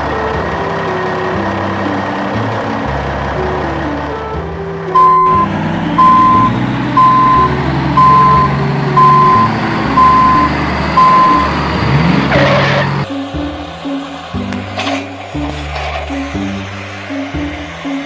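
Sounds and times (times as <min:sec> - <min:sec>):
truck reversing alarm beeping: 0:00.0 - 0:13.1
background music: 0:00.0 - 0:18.0.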